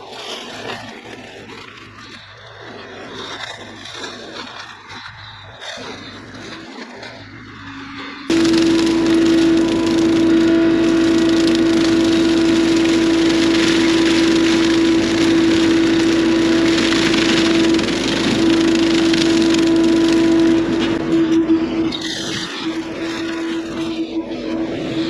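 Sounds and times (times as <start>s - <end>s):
excavator brush cutter humming: 6.7s - 25.0s.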